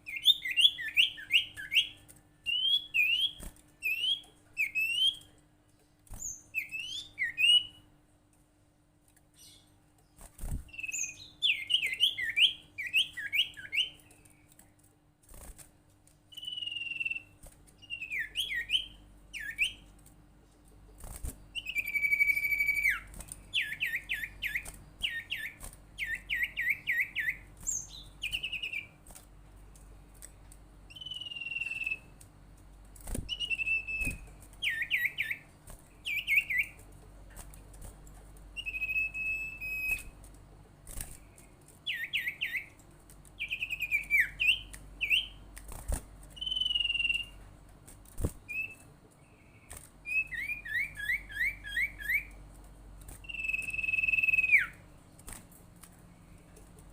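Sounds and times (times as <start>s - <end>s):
songbird trills and whistles: 0.0s - 5.3s, 6.2s - 7.8s, 10.7s - 14.0s, 16.3s - 19.8s, 21.5s - 28.9s, 30.9s - 32.1s, 33.3s - 36.8s, 38.6s - 40.1s, 41.8s - 42.7s, 43.4s - 45.4s, 46.4s - 47.4s, 48.5s - 48.8s, 50.0s - 52.4s, 53.2s - 54.8s.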